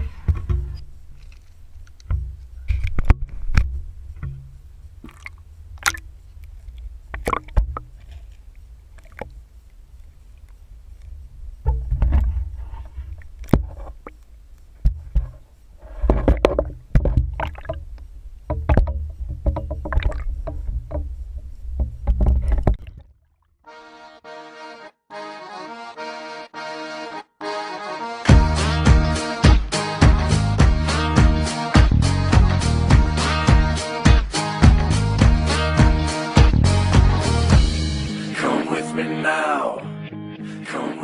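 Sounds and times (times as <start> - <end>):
water splashes: 5.0 - 9.4, 16.4 - 18.0, 19.8 - 20.5
sharp knocks: 18.5 - 21.1.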